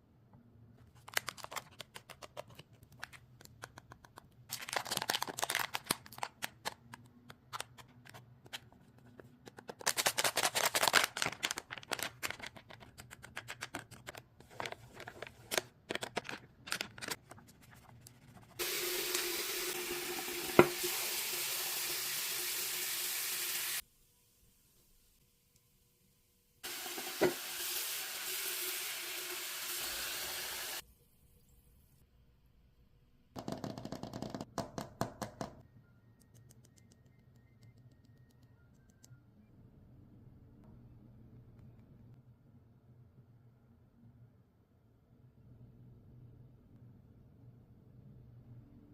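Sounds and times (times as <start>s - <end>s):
plastic wrappers crinkling: 1.0s - 3.2s, 4.5s - 7.9s, 9.5s - 17.2s.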